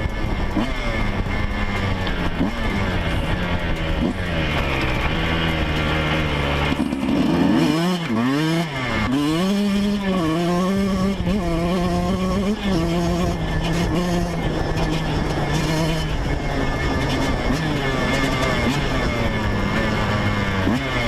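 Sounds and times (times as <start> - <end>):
two-stroke motorcycle engine revving: 0.0 - 21.0.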